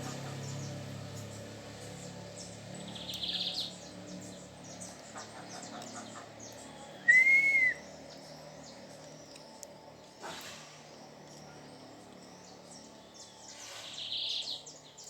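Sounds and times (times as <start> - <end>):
birds chirping: 0.0 - 15.0
loud whistled bird note: 7.0 - 8.0.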